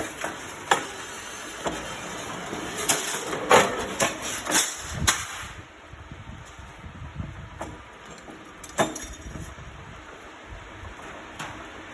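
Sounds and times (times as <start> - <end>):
steel-cutting machine running: 0.0 - 5.0.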